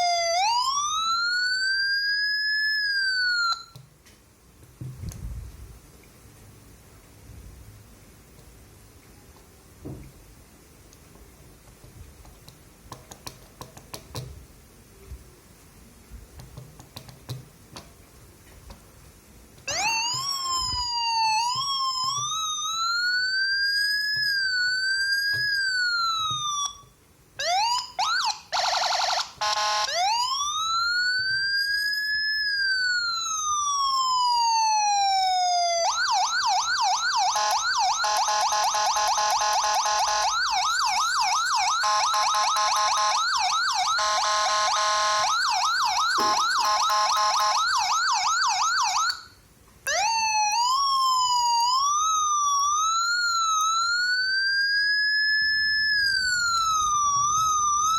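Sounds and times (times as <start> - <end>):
electronic police siren: 0.0 - 3.8, 19.7 - 57.9.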